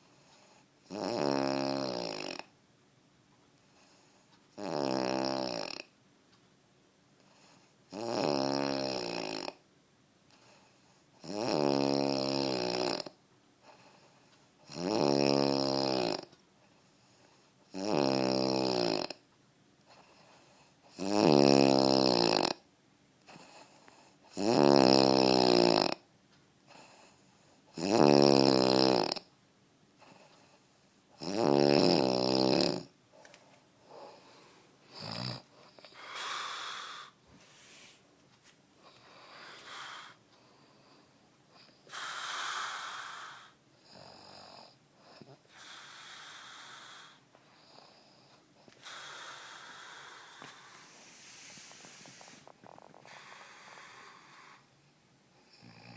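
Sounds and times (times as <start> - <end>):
man snoring: 0.9 - 2.5, 4.6 - 5.9, 7.9 - 9.6, 11.2 - 13.2, 14.7 - 16.3, 17.7 - 19.2, 20.9 - 22.6, 24.3 - 26.0, 27.7 - 29.3, 31.2 - 32.9, 33.9 - 37.2, 41.9 - 48.2, 48.8 - 54.6, 55.6 - 55.9
short snorts and breaths: 38.8 - 40.2, 45.2 - 54.8.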